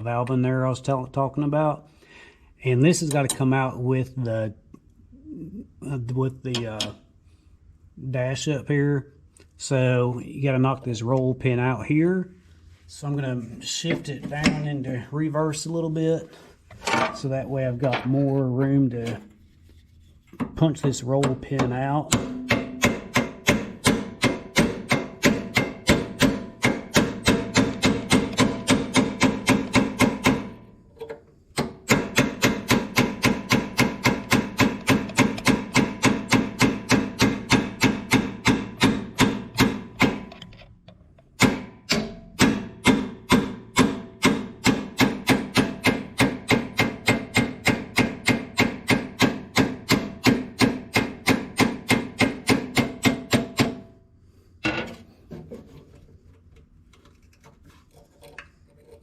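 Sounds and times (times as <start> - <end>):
hammer striking metal punch: 20.4 - 30.7, 31.6 - 40.4, 41.4 - 54.0.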